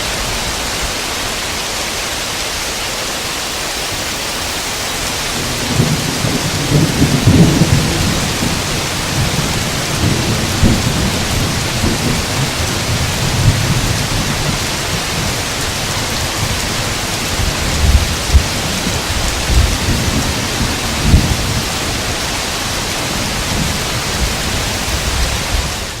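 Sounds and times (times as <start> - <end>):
heavy rain: 0.0 - 26.0
rolling thunder: 4.6 - 26.0.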